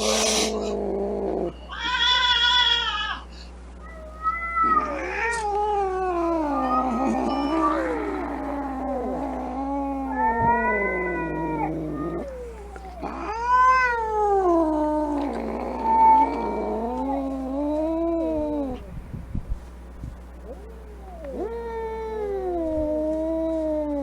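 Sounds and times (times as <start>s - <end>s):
angry cat yowling: 3.8s - 18.9s, 20.5s - 24.0s.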